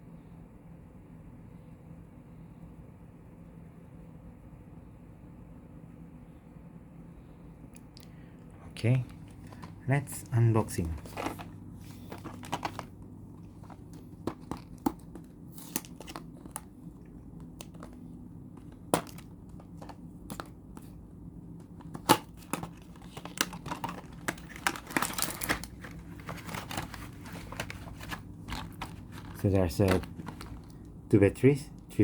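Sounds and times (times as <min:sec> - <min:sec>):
packaging crinkling and rustling: 0:08.9 - 0:21.0, 0:21.6 - 0:31.0.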